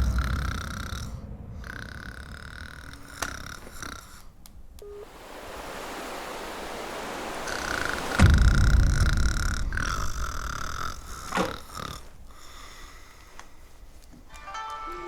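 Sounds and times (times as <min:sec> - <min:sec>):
long noisy breath: 0:08.8 - 0:14.0
man snoring: 0:09.3 - 0:12.6.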